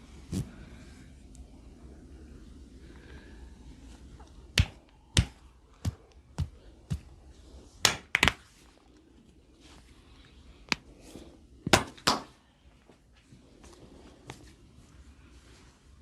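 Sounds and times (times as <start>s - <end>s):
hands slapping body: 4.6s - 7.1s, 7.8s - 8.4s, 11.7s - 12.4s.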